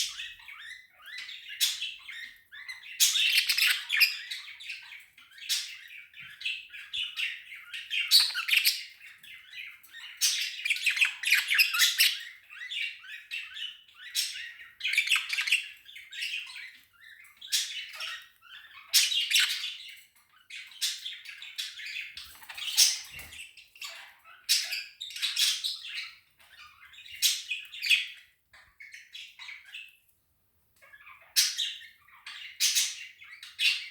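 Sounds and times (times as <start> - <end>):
budgerigar squeaking and chattering: 6.7 - 9.2.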